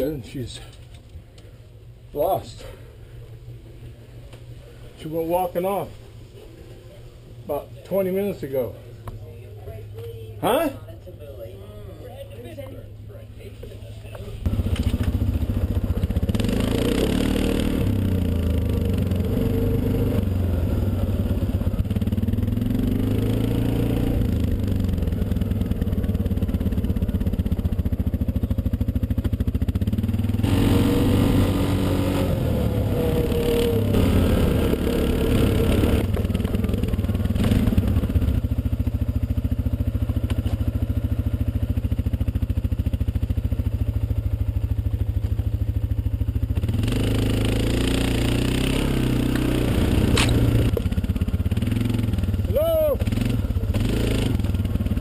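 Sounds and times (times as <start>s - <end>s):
quad engine revving: 14.4s - 42.1s, 46.4s - 55.0s.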